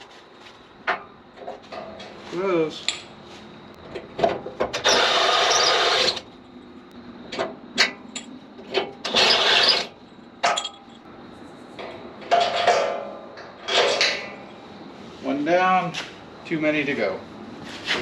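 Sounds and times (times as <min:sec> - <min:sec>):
electric drill cutting steel: 0:04.8 - 0:06.2, 0:09.1 - 0:09.9.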